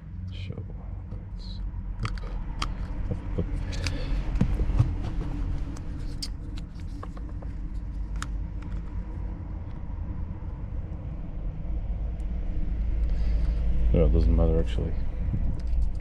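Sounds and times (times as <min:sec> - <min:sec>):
low outdoor rumble: 0:00.0 - 0:16.0
plastic casing clicks: 0:02.0 - 0:03.0.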